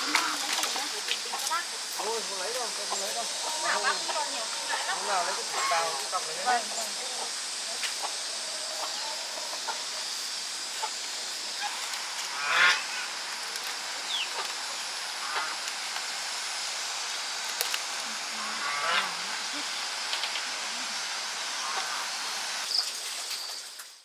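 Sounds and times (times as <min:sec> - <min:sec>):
farm birds calling: 0:00.0 - 0:23.6
high hiss: 0:00.0 - 0:24.0
loud bird honk: 0:11.6 - 0:13.1, 0:15.2 - 0:15.6, 0:18.3 - 0:19.6.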